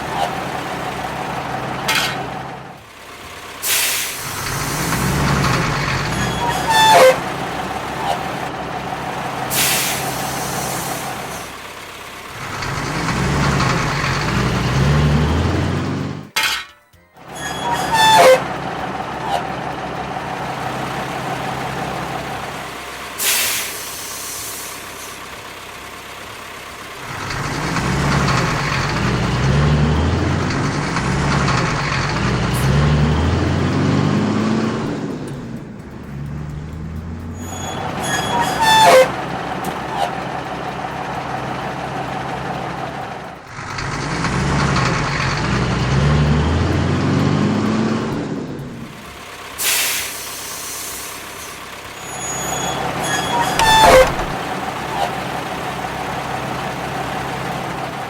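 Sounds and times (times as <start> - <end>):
short hiss: 3.6 - 5.2, 9.5 - 11.5, 23.2 - 25.2, 49.6 - 51.6
cartoon engine rumble: 52.5 - 55.5.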